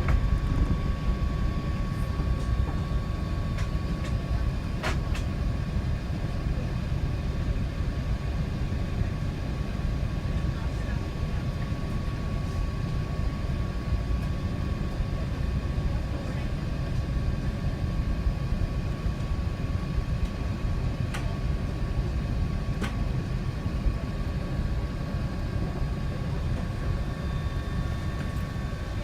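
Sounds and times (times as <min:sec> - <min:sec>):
aircraft cabin rumble: 0:00.0 - 0:29.0.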